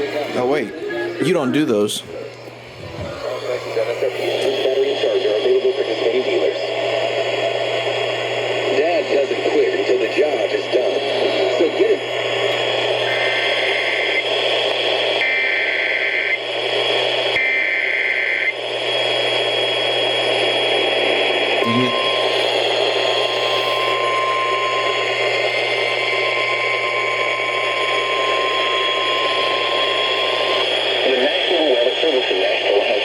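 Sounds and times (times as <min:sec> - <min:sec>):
radio static hiss and hum: 0:00.0 - 0:01.0, 0:01.7 - 0:33.0
steady alarm tone: 0:20.2 - 0:32.4
data burst tones: 0:21.6 - 0:32.6.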